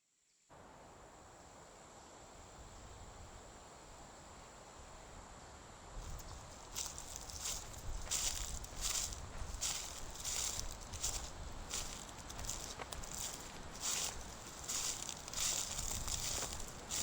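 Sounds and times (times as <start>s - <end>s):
insect drone: 0.3s - 17.0s
footsteps crunching leaf litter: 6.0s - 17.0s.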